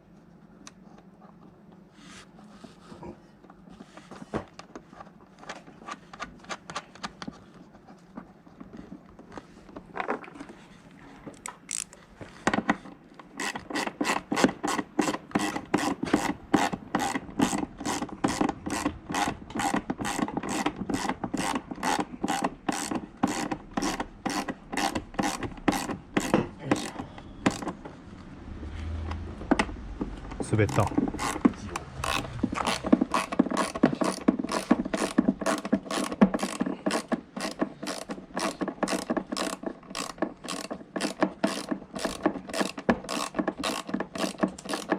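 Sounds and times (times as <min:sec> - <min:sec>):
ratchet wrench strokes: 0:11.7 - 0:11.9, 0:13.4 - 0:26.9, 0:30.7 - 0:44.9.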